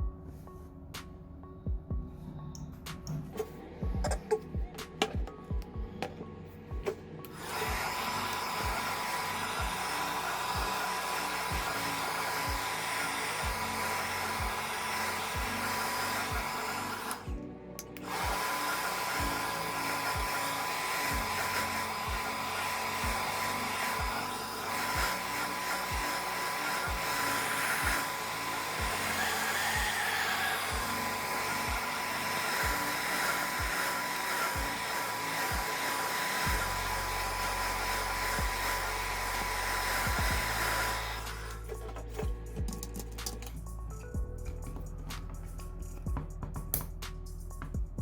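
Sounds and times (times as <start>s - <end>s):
background music with steady beat: 0.0s - 48.0s
hot-air blower whining: 3.4s - 43.5s.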